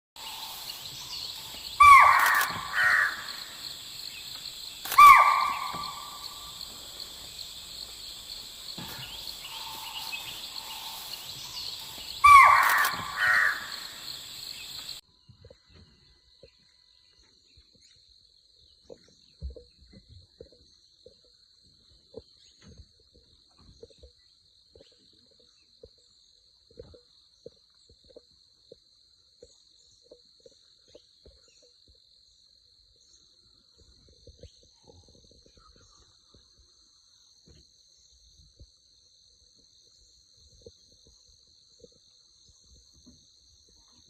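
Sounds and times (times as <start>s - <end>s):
harsh animal calls: 0.2s - 14.5s
high drone of insects: 0.2s - 15.0s.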